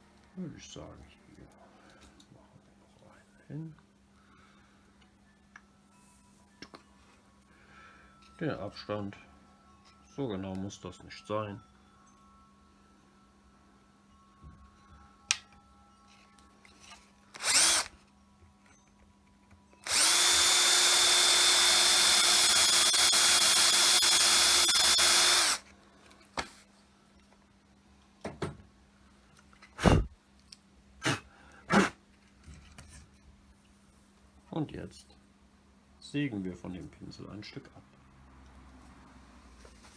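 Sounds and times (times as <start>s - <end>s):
electric drill boring into wood: 17.4s - 17.9s, 19.8s - 25.6s.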